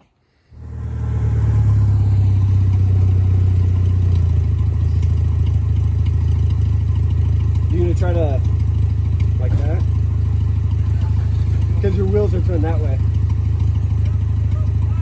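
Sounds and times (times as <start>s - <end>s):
car engine running steadily: 0.5s - 15.0s.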